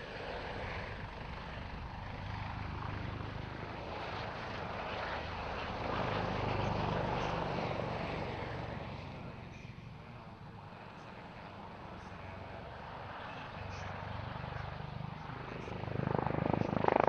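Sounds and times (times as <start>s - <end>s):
helicopter flying past: 0.0s - 17.0s.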